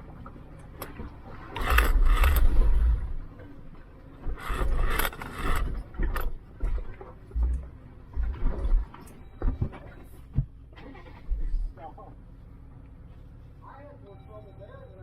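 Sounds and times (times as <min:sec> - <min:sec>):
vehicle scraping against rock: 0:01.4 - 0:03.0, 0:04.2 - 0:06.8.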